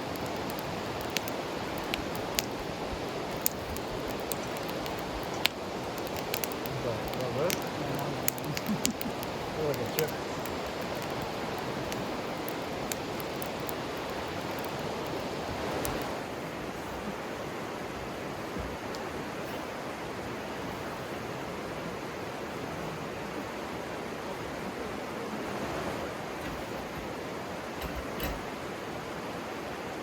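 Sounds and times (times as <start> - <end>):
river water flowing: 0.0 - 30.0.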